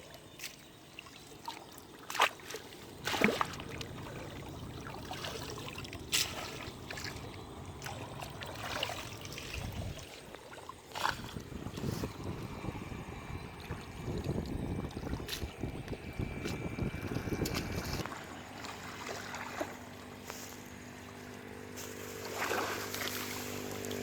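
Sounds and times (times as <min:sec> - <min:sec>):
shallow water sloshing: 0:00.0 - 0:24.0
sharp water splashes: 0:00.4 - 0:12.1, 0:16.4 - 0:20.2, 0:21.7 - 0:24.0.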